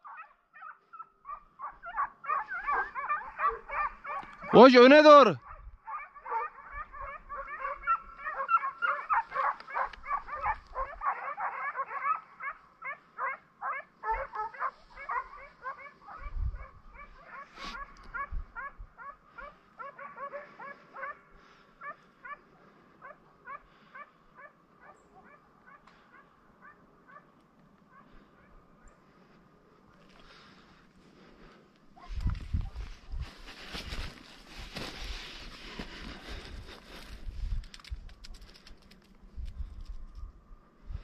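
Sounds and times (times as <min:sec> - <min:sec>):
hounds yelping: 0:00.0 - 0:29.4.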